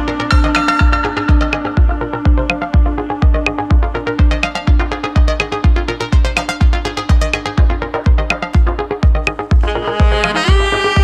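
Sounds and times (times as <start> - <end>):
held synth tone: 0.0 - 3.4
deep kick drum beat: 0.0 - 11.0
hi-hat ticks: 0.2 - 10.4.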